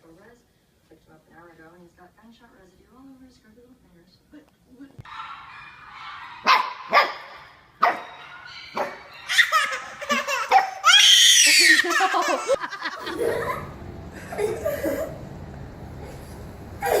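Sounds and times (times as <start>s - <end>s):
young child laughing: 9.3s - 15.2s, 16.8s - 17.0s.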